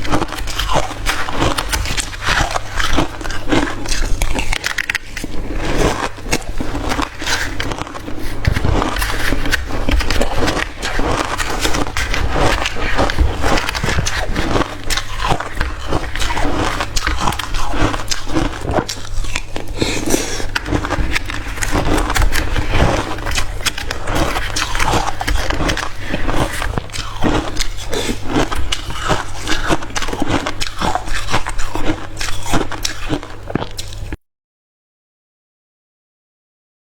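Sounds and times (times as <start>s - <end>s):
person chewing crushed ice: 0.0s - 34.2s.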